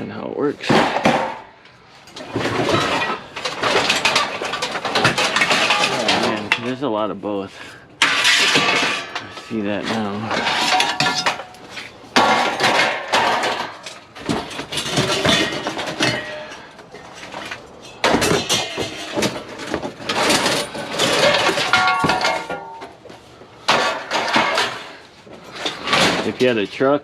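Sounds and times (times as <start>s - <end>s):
scrap metal clanking: 0.1s - 26.9s.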